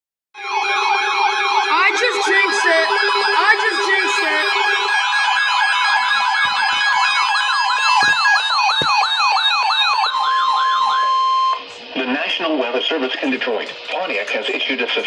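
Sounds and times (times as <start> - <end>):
electronic siren wails: 0.4 - 11.7
steady beeping tones: 0.4 - 11.7.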